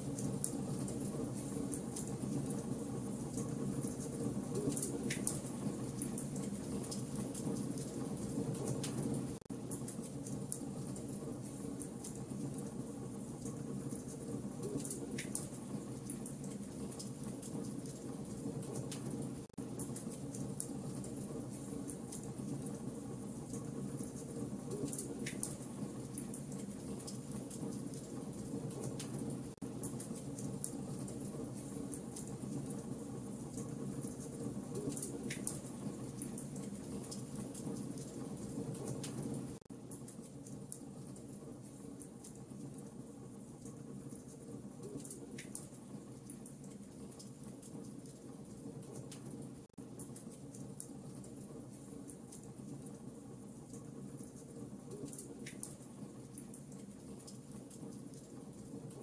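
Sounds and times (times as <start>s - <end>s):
fire crackling and popping: 0.0s - 42.8s
low rumble of fire flames: 0.0s - 59.0s.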